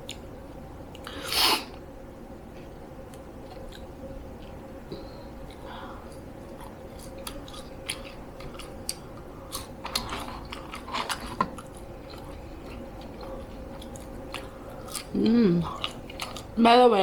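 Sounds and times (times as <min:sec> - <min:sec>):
chewing and biting food: 0:05.4 - 0:16.6.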